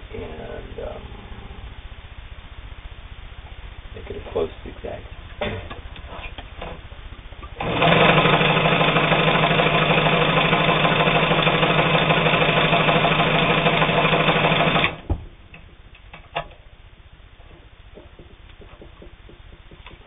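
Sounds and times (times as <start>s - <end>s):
sewing machine running: 7.6s - 15.0s.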